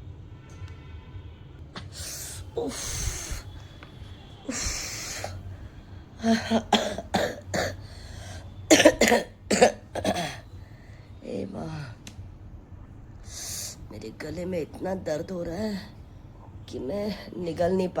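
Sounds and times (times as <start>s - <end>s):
woman coughing: 1.8s - 3.6s, 4.5s - 5.4s, 6.2s - 10.4s.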